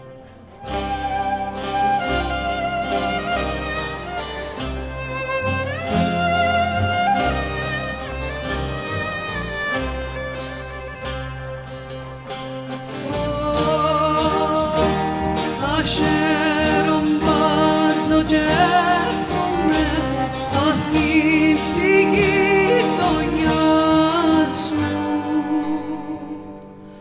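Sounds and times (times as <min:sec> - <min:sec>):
bass: 0:00.0 - 0:27.0
lute: 0:00.0 - 0:27.0
viola playing ornamented melody: 0:00.0 - 0:27.0
person singing: 0:12.9 - 0:27.0.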